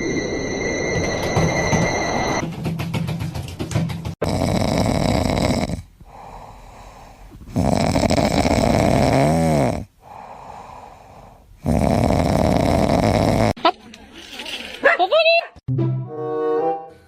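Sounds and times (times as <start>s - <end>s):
wavering squeal: 0.0s - 2.4s
pet snoring loudly: 4.2s - 13.6s.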